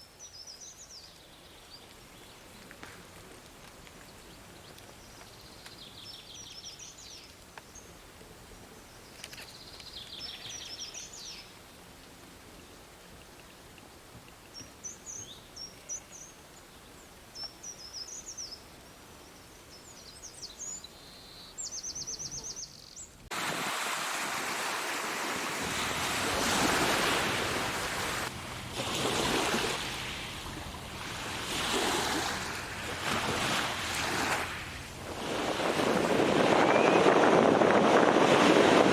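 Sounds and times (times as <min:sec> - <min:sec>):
songbirds chirping and trilling: 0:04.0 - 0:11.6, 0:14.4 - 0:23.3
ocean surf breaking: 0:23.3 - 0:38.9.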